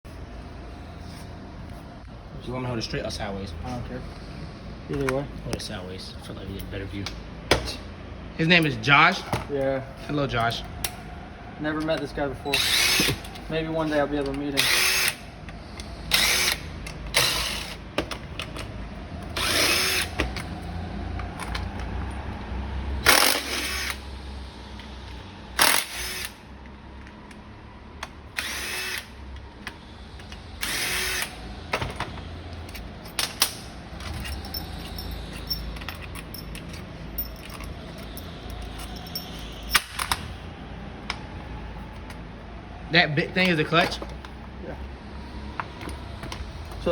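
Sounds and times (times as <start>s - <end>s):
power drill bursts: 12.5s - 13.3s, 14.5s - 15.3s, 16.1s - 17.8s, 19.4s - 20.2s, 23.0s - 24.0s, 25.6s - 26.4s, 28.3s - 29.2s, 30.6s - 31.4s.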